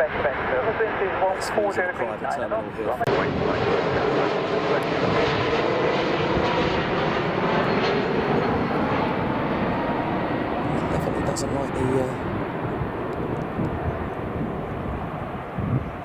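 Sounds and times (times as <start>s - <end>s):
aircraft engine rush with whine: 0.0s - 16.0s.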